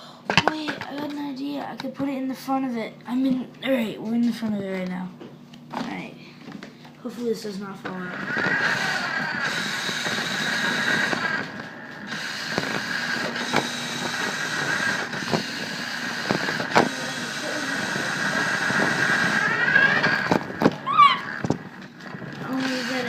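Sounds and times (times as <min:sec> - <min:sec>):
toy truck electric motor whining: 0:07.8 - 0:23.0.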